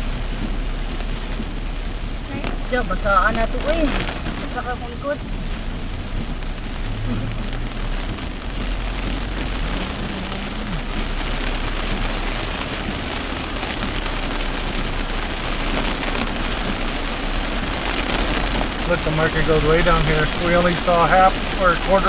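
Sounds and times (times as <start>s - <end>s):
heavy rain on car roof: 0.0s - 22.0s
low road rumble: 0.0s - 22.0s.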